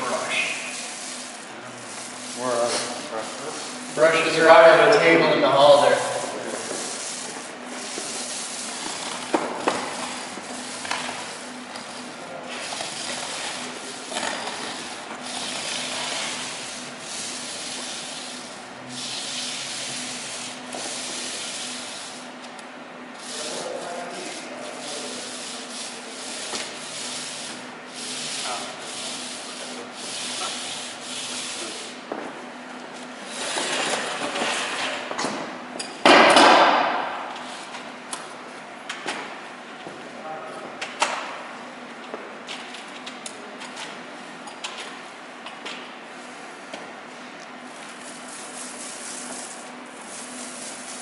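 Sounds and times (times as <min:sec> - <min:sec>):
paint roller on wall: 0:00.0 - 0:22.5, 0:23.1 - 0:37.9, 0:44.6 - 0:51.0
steady low hum: 0:00.0 - 0:36.0.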